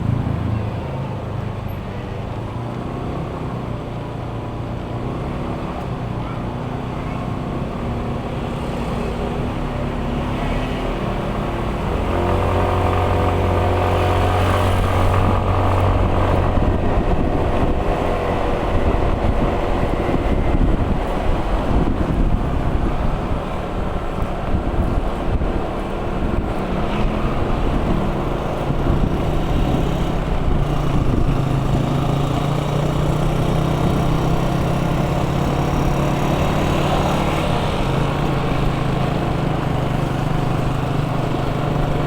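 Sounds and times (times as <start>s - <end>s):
engine running: 10.1s - 42.0s.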